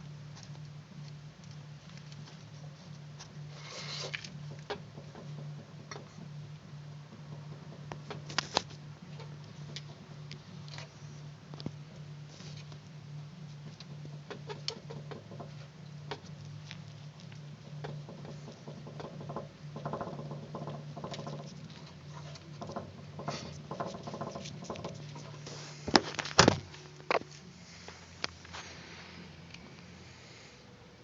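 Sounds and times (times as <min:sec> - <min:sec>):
steady low hum: 0:00.0 - 0:31.0
steering clicks and knocks: 0:13.6 - 0:27.3.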